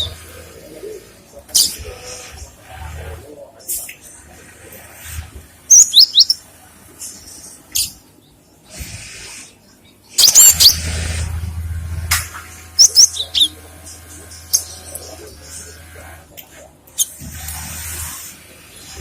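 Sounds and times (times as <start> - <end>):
bird chirping: 5.7 - 6.4, 9.7 - 11.0, 12.8 - 15.7.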